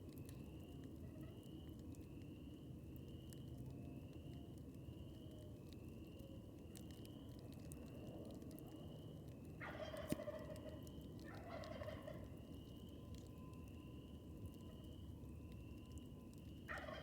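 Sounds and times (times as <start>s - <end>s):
campfire crackling: 0.0s - 11.5s
turkey gobbling: 9.6s - 10.6s, 11.4s - 12.2s, 16.7s - 17.0s.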